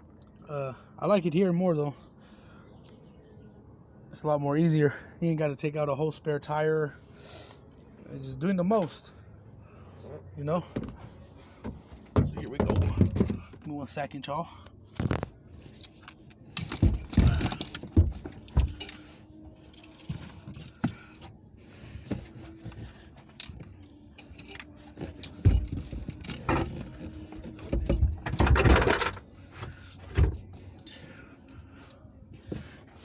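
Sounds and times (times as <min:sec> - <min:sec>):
metallic clinks and rattles: 0:15.7 - 0:21.3, 0:23.3 - 0:29.3.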